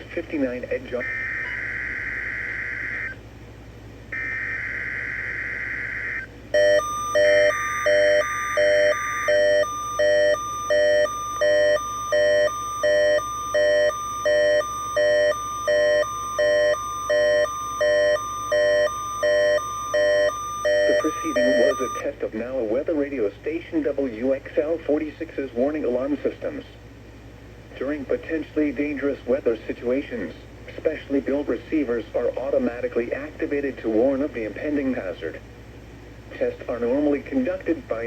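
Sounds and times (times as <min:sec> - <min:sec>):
digital data bursts: 0:04.2 - 0:22.0
pulsing alarm beeps: 0:04.2 - 0:22.0
steady warning tone: 0:04.2 - 0:22.1.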